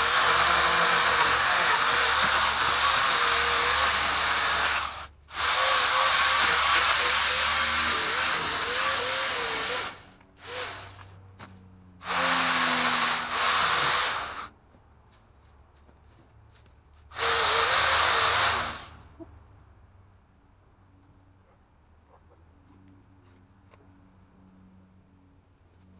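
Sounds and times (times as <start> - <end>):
pole saw motor whining: 0.0 - 11.3, 12.0 - 14.5, 17.1 - 19.0.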